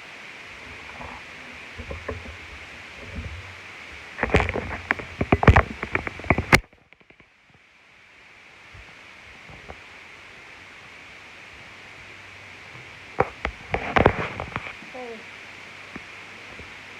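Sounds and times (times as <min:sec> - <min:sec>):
sharp clicks and rattles: 0:00.6 - 0:07.3.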